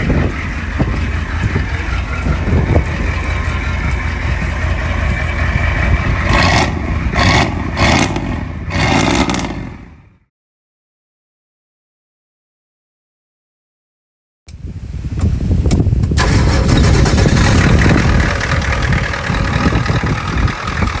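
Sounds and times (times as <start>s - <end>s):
truck engine rumbling: 0.0s - 10.1s, 15.0s - 21.0s.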